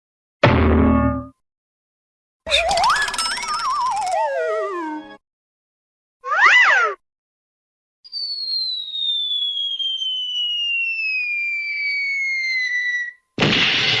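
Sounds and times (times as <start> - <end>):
cartoon falling whistle: 2.5 - 5.0, 8.1 - 13.2.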